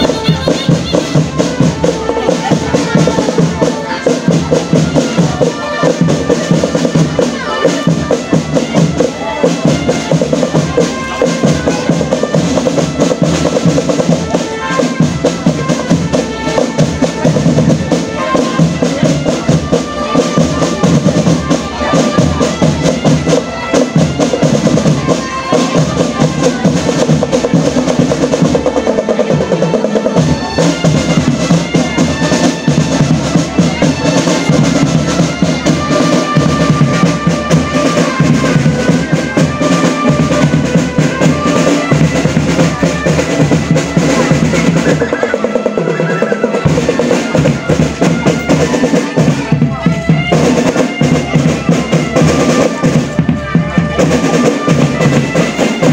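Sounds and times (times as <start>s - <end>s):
high held melodic notes: 0.0s - 12.6s
bass drum beats: 0.0s - 55.9s
snare drums rolling: 0.0s - 55.9s.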